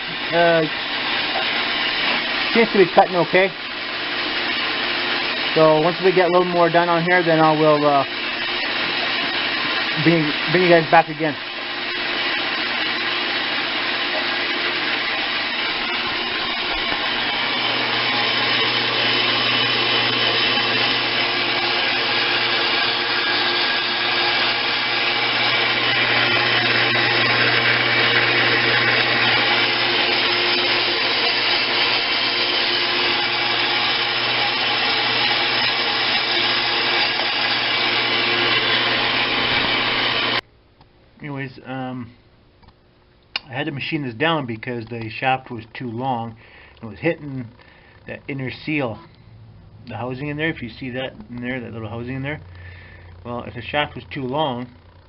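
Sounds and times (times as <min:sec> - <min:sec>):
bandsaw cutting steel: 0:00.0 - 0:40.4
low motor hum: 0:48.1 - 0:55.0.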